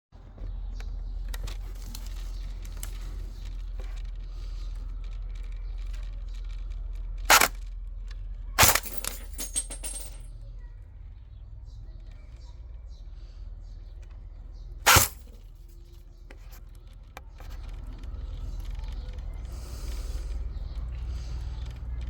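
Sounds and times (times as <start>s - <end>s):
airsoft rifle shots: 7.3s - 7.5s.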